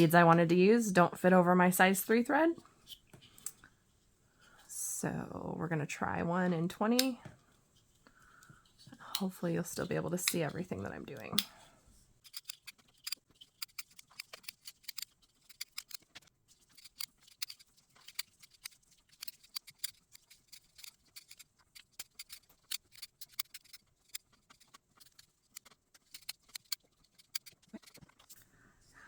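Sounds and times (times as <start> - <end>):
beads clicking and tapping: 12.2 - 28.4.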